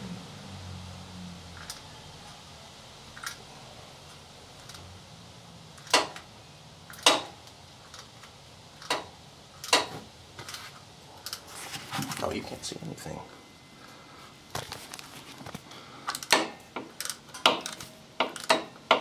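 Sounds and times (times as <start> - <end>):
metallic clicks of tools: 16.1 - 19.0.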